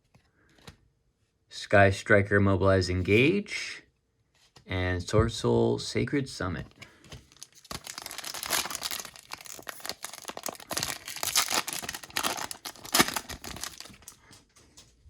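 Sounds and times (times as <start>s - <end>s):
foil wrapper tearing and crinkling: 7.3s - 14.2s.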